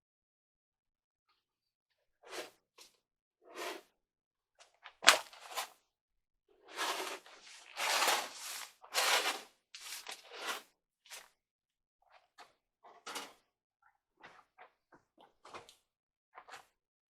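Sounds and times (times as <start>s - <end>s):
material rustling and tearing: 7.4s - 10.2s.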